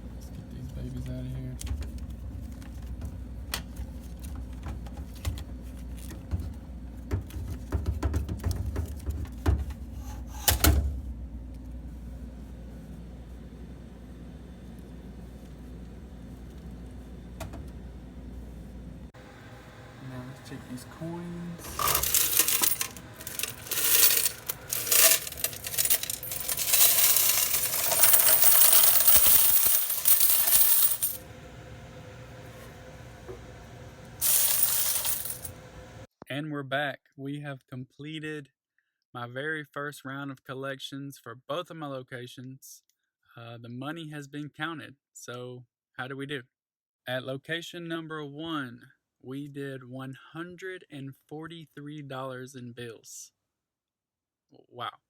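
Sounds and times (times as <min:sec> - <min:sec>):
vending machine clicks and knocks: 0:07.1 - 0:09.8
coins jingling and clattering: 0:21.6 - 0:31.2, 0:34.2 - 0:35.6.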